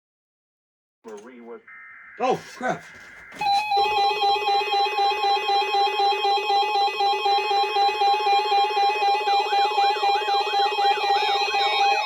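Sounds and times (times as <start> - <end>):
steady electronic tone: 1.7 - 12.0
siren-like sweep: 2.1 - 12.0
rapidly pulsing lower tone: 3.8 - 12.0.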